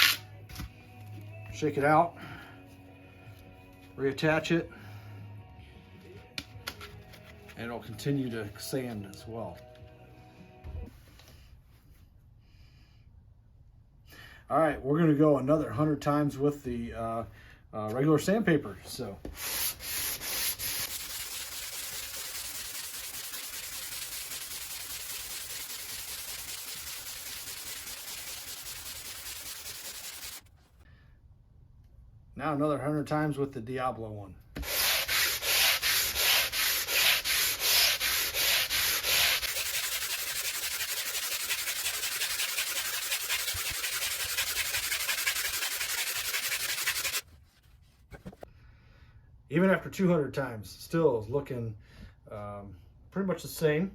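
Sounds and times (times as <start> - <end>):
sandpaper rubbing on wood: 19.4 - 30.5, 34.6 - 47.3.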